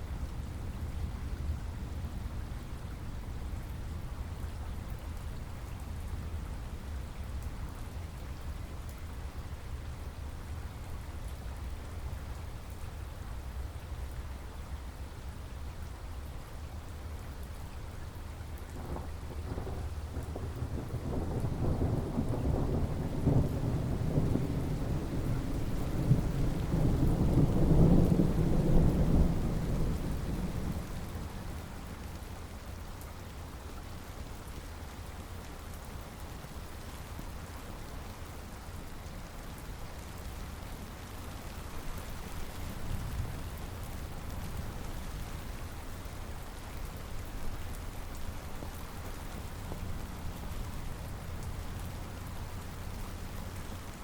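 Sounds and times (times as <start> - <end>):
steady rain: 0.0 - 54.0
rolling thunder: 18.8 - 31.2.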